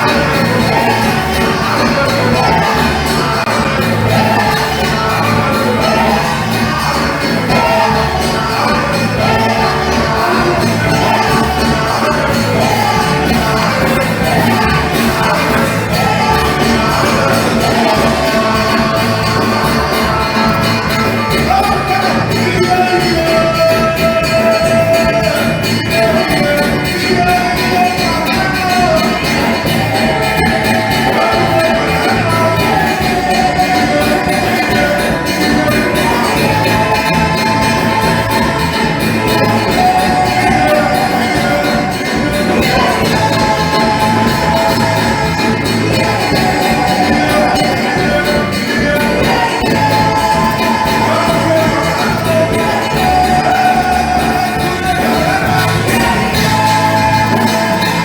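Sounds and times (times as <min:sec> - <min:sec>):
live music with steady beat: 0:00.0 - 0:58.0
voices singing: 0:00.0 - 0:58.0.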